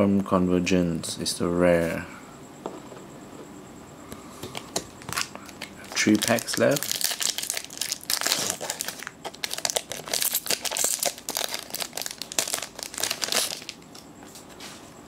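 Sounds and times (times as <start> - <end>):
foil wrapper crinkling: 5.0 - 13.8.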